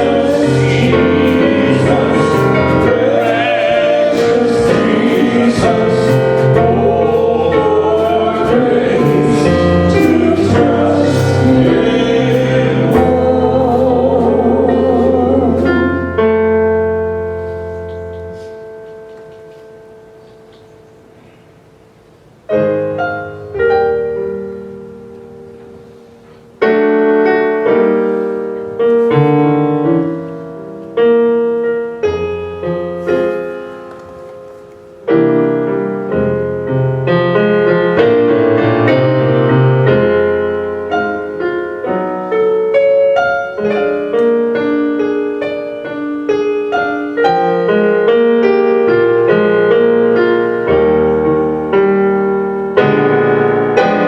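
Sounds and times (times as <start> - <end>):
piano music: 0.0 - 54.0.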